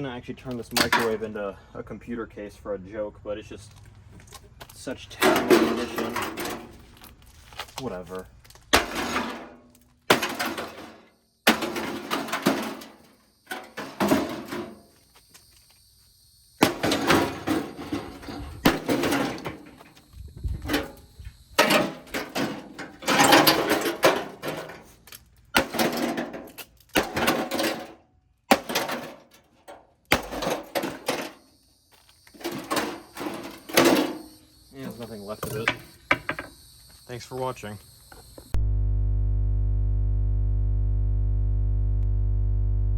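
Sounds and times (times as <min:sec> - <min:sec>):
clattering debris: 0:05.1 - 0:15.0, 0:16.6 - 0:31.5, 0:32.3 - 0:36.5.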